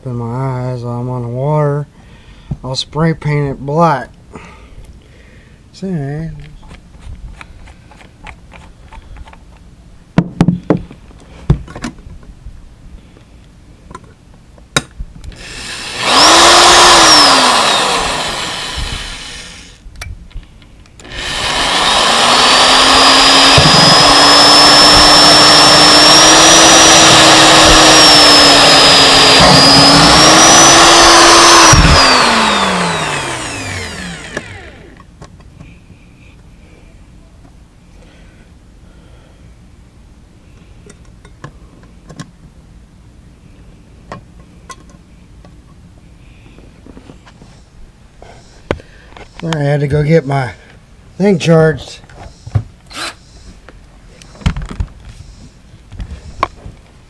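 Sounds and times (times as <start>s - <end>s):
power tool motor whining: 15.3s - 19.8s, 21.0s - 35.0s, 52.9s - 53.2s.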